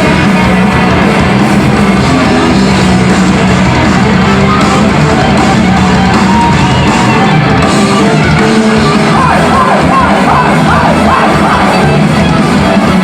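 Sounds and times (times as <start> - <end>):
heavy metal band playing live: 0.0 - 13.0.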